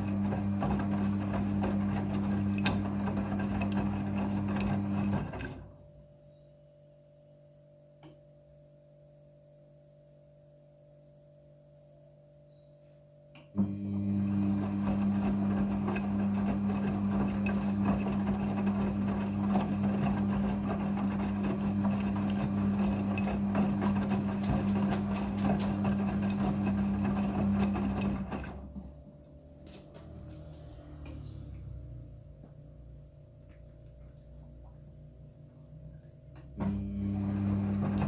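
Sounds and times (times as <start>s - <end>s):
washing machine humming: 0.0s - 5.8s, 13.6s - 38.0s.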